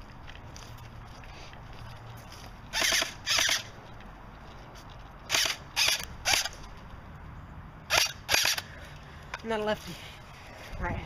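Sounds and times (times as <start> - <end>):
airsoft gun full-auto bursts: 2.7 - 3.7, 5.3 - 6.5, 7.9 - 8.6.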